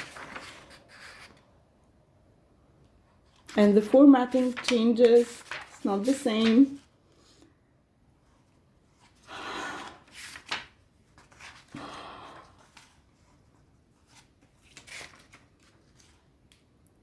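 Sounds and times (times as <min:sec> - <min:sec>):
book pages rustling: 0:00.0 - 0:01.5, 0:03.2 - 0:06.9, 0:08.9 - 0:11.9, 0:12.5 - 0:16.6.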